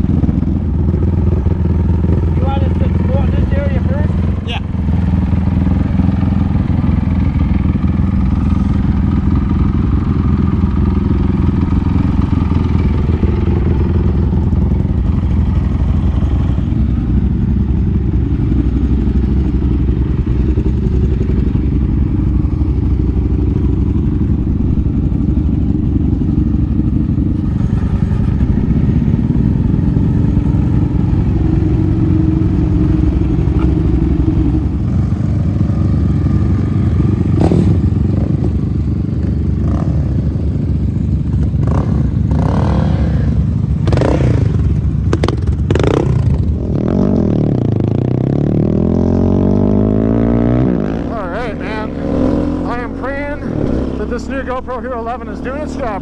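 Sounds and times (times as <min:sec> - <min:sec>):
quad engine revving: 0:20.2 - 0:38.6, 0:39.2 - 0:40.8, 0:41.5 - 0:56.0.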